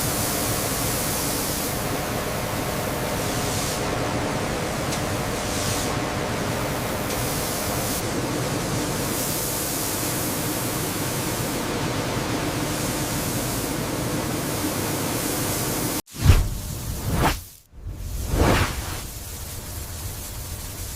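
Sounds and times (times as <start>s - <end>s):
machinery hiss: 0.0s - 13.9s, 14.5s - 20.9s.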